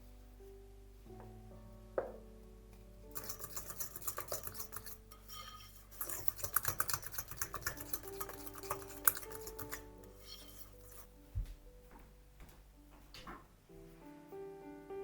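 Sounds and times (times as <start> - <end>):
soft background music: 0.0 - 15.0
cutlery clinking on dishes: 3.2 - 10.9.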